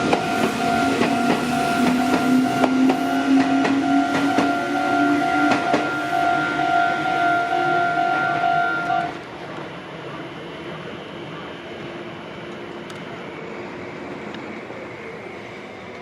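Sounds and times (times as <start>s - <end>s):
train wheels clacking: 0.0s - 6.4s
level crossing alarm ringing: 0.0s - 9.2s
low train whine: 0.0s - 16.0s.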